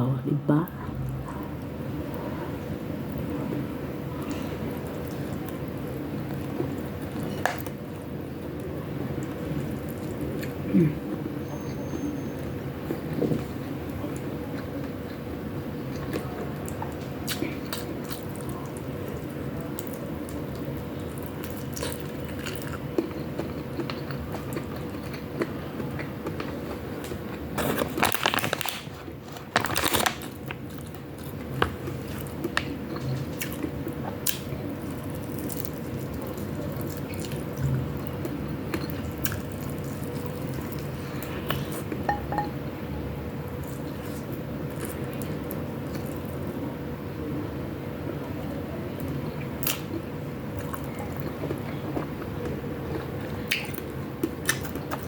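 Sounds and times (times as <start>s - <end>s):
low hum: 0.0s - 3.6s
person chewing food: 4.2s - 10.7s, 15.9s - 28.4s, 29.8s - 42.1s, 43.6s - 46.6s, 50.6s - 55.0s.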